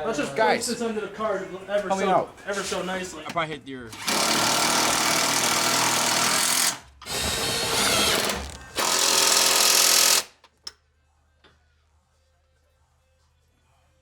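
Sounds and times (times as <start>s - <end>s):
impact wrench running: 3.9s - 10.4s.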